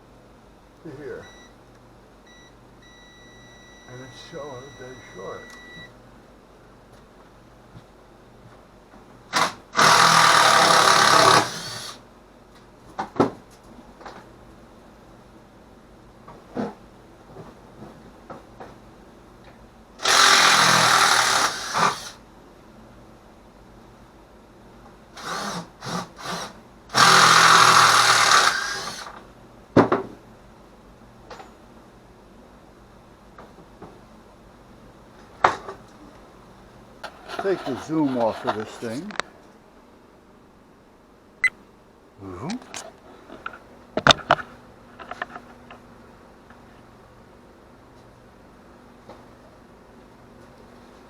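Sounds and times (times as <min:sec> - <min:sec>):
power tool motor: 0:09.3 - 0:12.0, 0:20.0 - 0:22.2, 0:25.2 - 0:29.2.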